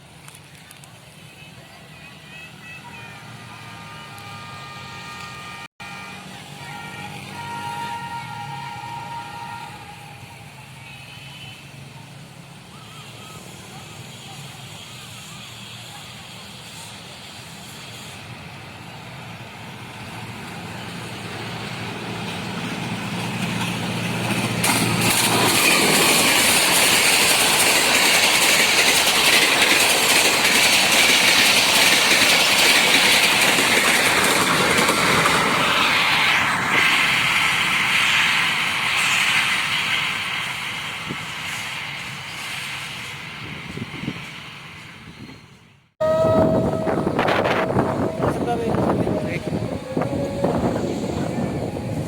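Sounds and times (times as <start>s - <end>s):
low locomotive hum: 0.0s - 52.0s
train coaches rushing past: 0.0s - 52.0s.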